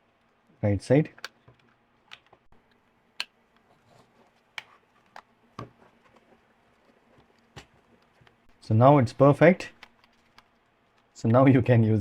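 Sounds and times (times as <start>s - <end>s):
plastic clicks and taps: 1.2s - 2.5s.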